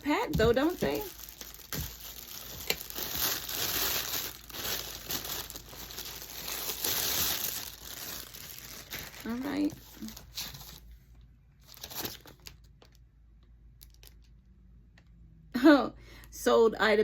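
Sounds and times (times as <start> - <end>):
packaging wrap rustling: 0.0 - 10.9, 11.6 - 13.0.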